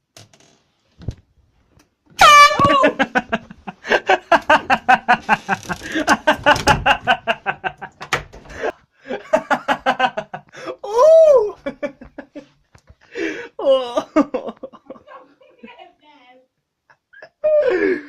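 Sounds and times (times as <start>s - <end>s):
person crying out: 2.2s - 3.1s, 10.8s - 11.6s, 13.6s - 14.2s, 17.4s - 18.0s
person laughing hard: 2.2s - 7.9s.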